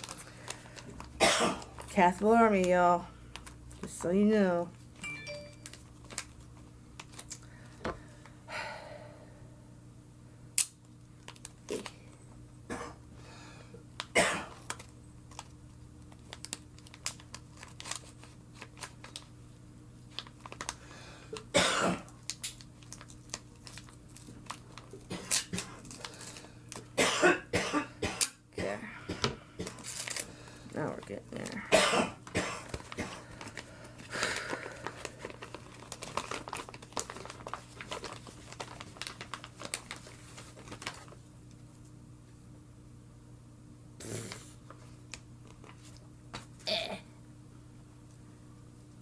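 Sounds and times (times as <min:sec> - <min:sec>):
wrapping crinkling and rustling: 0:00.0 - 0:07.8, 0:11.2 - 0:12.2, 0:14.0 - 0:26.9, 0:29.6 - 0:31.6, 0:32.2 - 0:41.9, 0:44.3 - 0:46.6
faint steady hum: 0:00.0 - 0:49.0.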